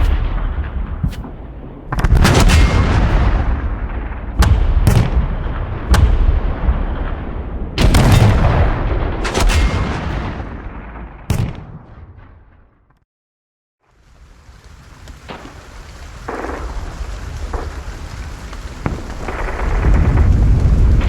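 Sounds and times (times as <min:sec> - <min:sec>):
gunshots: 0:00.0 - 0:12.5
artillery booms: 0:00.0 - 0:12.9, 0:16.2 - 0:21.0.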